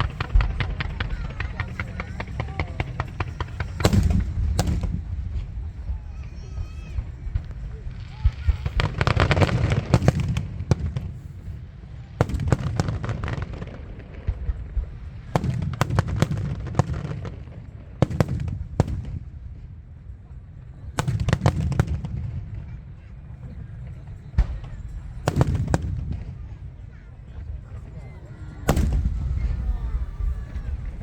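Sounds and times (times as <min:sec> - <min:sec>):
fireworks bursting: 0:00.0 - 0:20.0, 0:20.9 - 0:31.0
low rumble: 0:28.6 - 0:31.0.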